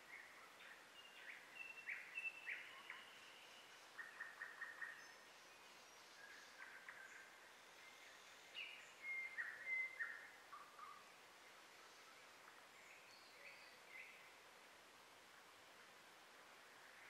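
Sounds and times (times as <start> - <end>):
faint background hiss: 0.0 - 17.0
birds chirping and whistling: 8.6 - 11.0.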